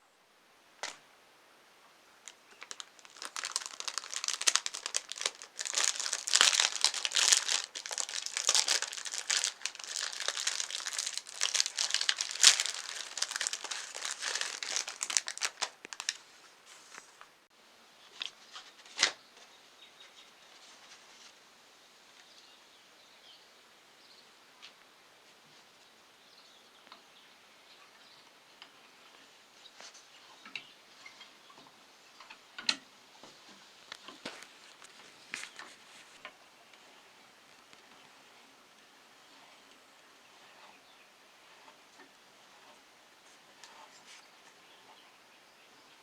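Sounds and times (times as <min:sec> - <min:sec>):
wrapper crinkling and tearing: 0:02.3 - 0:16.3.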